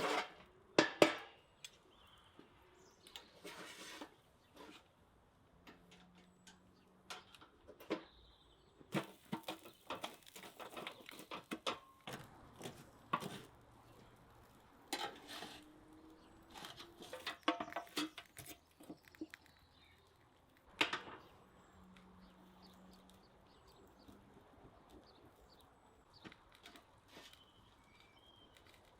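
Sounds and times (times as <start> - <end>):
objects being handled tapping: 16.2 - 21.3.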